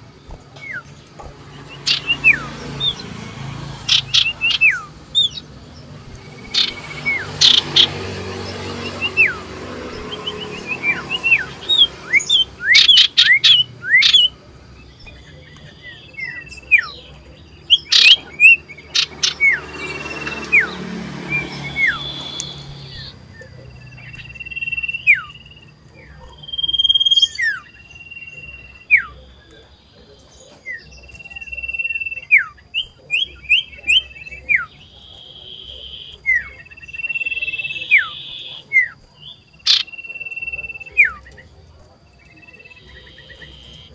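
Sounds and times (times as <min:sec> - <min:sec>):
bird whistling song: 0:00.0 - 0:43.9
sharp clicks: 0:22.2 - 0:24.2.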